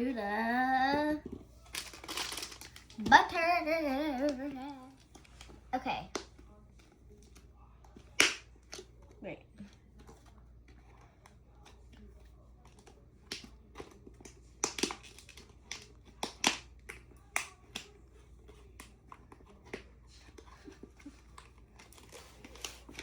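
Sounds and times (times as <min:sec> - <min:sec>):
plastic packaging crackling: 0:01.6 - 0:03.0.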